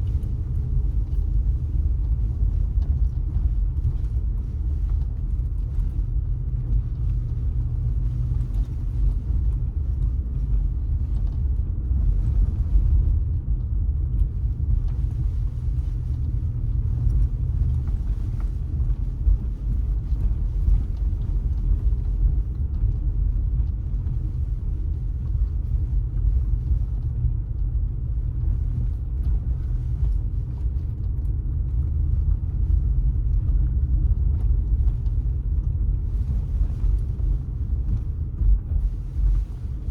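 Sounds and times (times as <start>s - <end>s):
car driving rumble: 0.0s - 39.9s.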